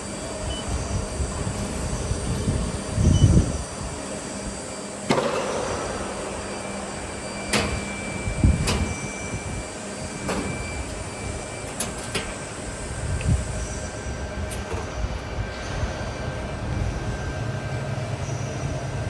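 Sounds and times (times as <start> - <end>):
low hum: 5.0 - 18.8
machine mechanical din: 5.1 - 16.5.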